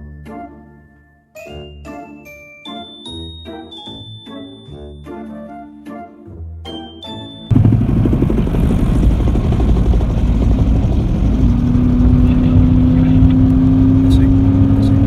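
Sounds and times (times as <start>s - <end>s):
engine rumbling: 7.5s - 15.0s
steady hum rising in pitch: 7.5s - 15.0s.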